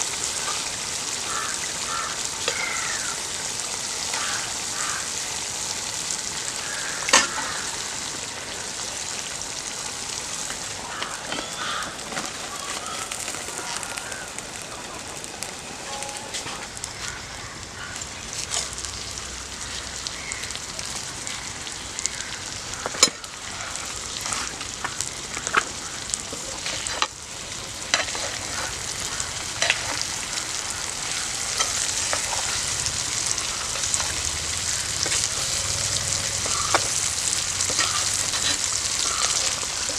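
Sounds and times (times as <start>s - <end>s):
food sizzling in a pan: 0.0s - 39.9s
spoon scraping a pan: 27.9s - 28.7s.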